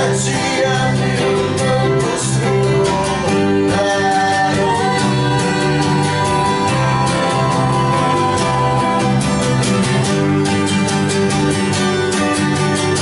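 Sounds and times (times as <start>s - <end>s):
person singing: 0.0s - 10.2s
strummed acoustic guitar: 0.0s - 13.0s.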